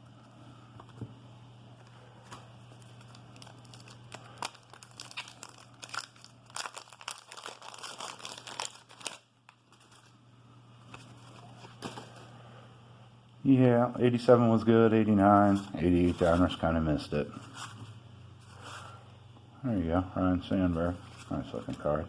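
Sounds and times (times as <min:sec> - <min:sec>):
card pack tearing and crinkling: 0:02.8 - 0:10.1.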